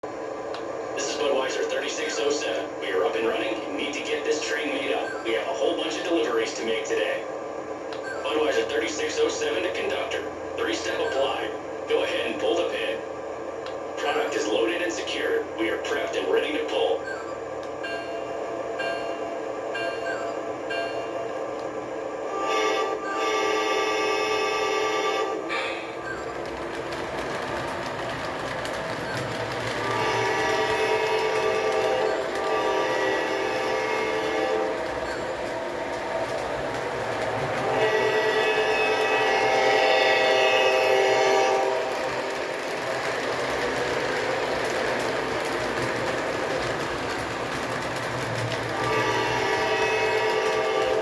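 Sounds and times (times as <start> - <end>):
model train running on track: 0.0 - 17.2, 17.8 - 51.0
model locomotive horn: 22.3 - 25.8, 29.8 - 34.9, 37.6 - 42.0, 48.7 - 51.0.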